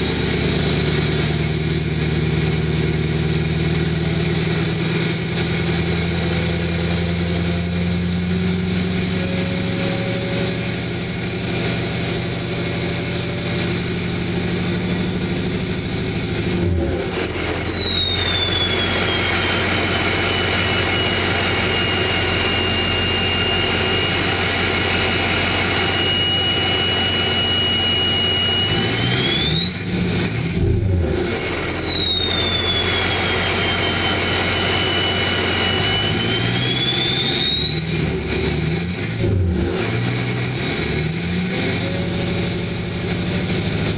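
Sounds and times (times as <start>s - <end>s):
diesel truck engine running: 0.0s - 43.9s
high turbo whistle: 0.0s - 43.9s.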